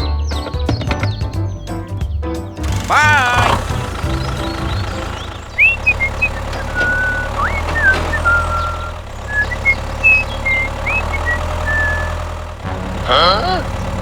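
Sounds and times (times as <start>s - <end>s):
low engine drone: 2.6s - 14.0s
high whistling chirps: 4.0s - 12.4s.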